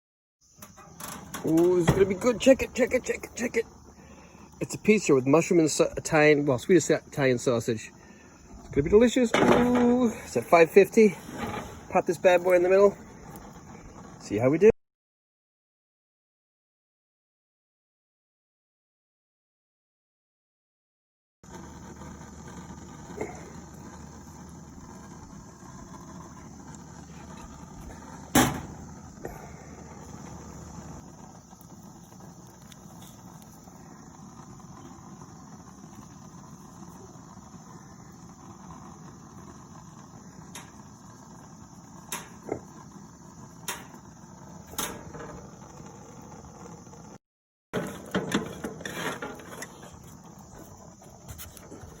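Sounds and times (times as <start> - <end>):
insects chirping: 0.4 - 14.7, 21.4 - 47.2, 47.8 - 52.0
low steady hiss: 0.6 - 14.7.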